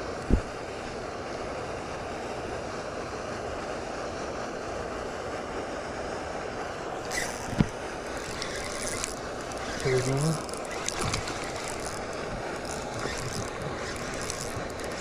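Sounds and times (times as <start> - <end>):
brief rustle: 7.1 - 15.0.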